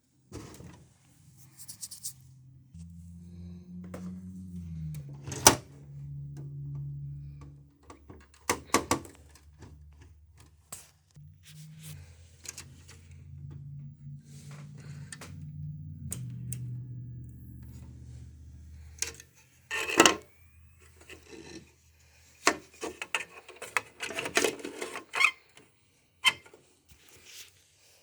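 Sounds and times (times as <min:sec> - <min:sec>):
low hum: 0:00.9 - 0:21.1.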